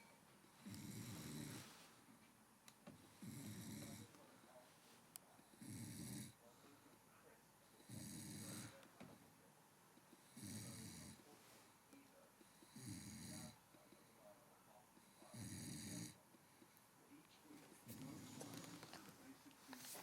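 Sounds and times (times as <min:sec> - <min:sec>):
quiet breathing: 0:00.0 - 0:20.0
man snoring: 0:00.6 - 0:01.7, 0:03.1 - 0:04.2, 0:05.5 - 0:06.4, 0:07.8 - 0:08.8, 0:10.2 - 0:11.2, 0:12.6 - 0:13.6, 0:15.0 - 0:16.2.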